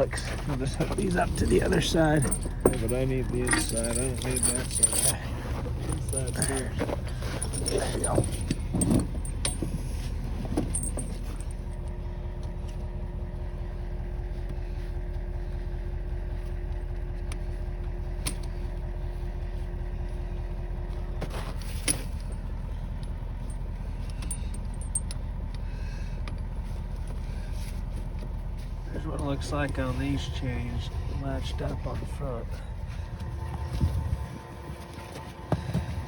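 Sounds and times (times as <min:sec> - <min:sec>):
snow chain links clinking: 0:00.0 - 0:11.8, 0:23.4 - 0:25.3
engine idling: 0:00.0 - 0:36.0.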